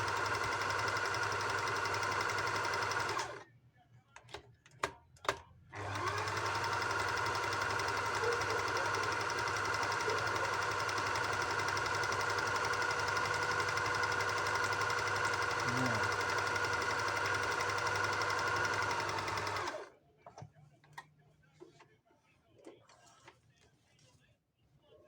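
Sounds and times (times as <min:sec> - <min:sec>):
sewing machine stitching: 0:00.0 - 0:03.4, 0:05.7 - 0:19.9.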